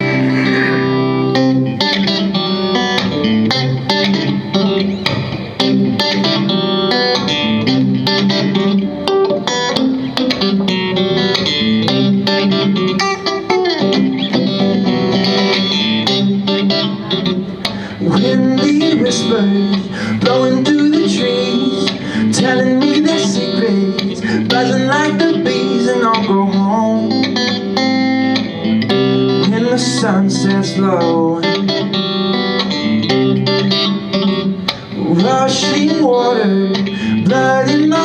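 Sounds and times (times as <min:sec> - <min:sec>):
guitar playing picked notes: 0:00.0 - 0:38.0.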